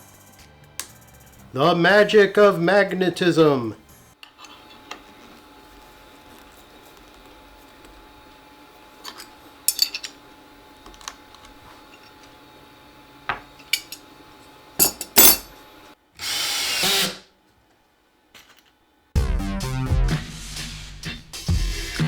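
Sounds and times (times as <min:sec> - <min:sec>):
tools and parts clicking: 0:09.0 - 0:10.2, 0:13.6 - 0:14.0, 0:14.8 - 0:15.5, 0:18.3 - 0:18.8
power tool running: 0:16.2 - 0:17.2.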